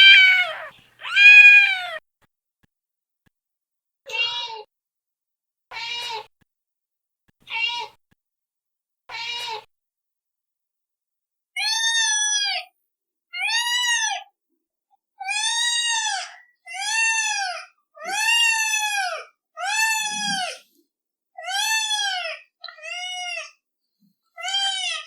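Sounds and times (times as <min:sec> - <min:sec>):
cat meowing short meows: 0:00.0 - 0:02.0
higher-pitched cat meow: 0:00.0 - 0:02.0.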